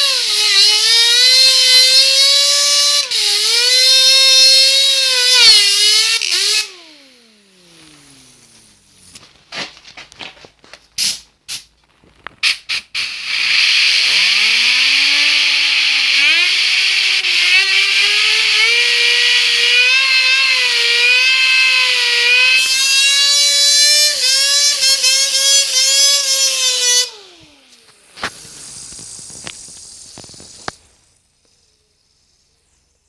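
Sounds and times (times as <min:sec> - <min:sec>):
compressed air blast: 0:11.0 - 0:11.7, 0:12.4 - 0:17.2, 0:26.9 - 0:33.0
faint hiss: 0:27.3 - 0:33.0.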